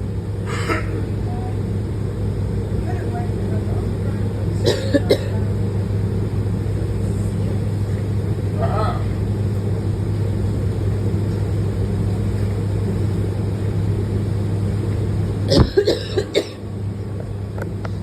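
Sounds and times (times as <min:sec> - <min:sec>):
bus engine drone: 0:00.0 - 0:18.0
person coughing: 0:00.5 - 0:01.0, 0:04.6 - 0:05.4, 0:15.5 - 0:16.6.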